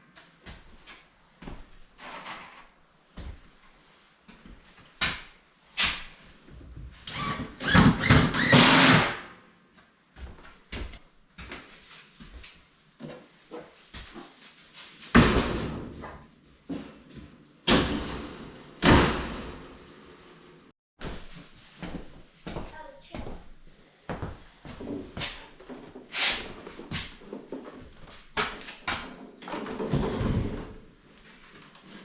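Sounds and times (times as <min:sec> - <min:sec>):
objects knocking and scraping: 0:27.2 - 0:30.8.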